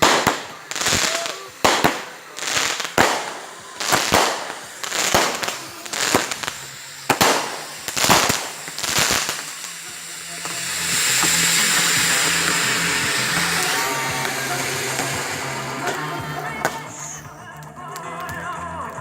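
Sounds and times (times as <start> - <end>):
steady hum and hiss: 0.0 - 17.2
firework hiss: 0.0 - 18.3
firework cracks and pops: 0.0 - 19.0.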